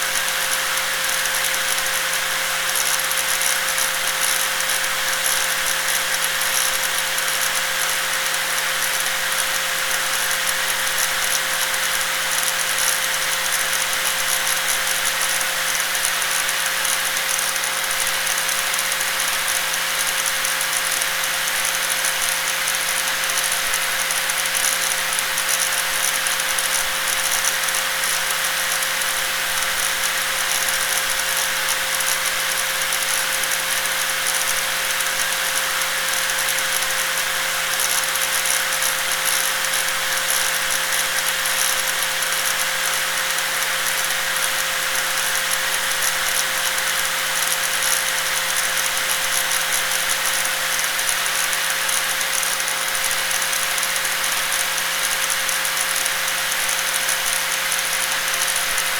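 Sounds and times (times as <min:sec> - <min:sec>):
angle grinder running: 0:15.5 - 0:58.9.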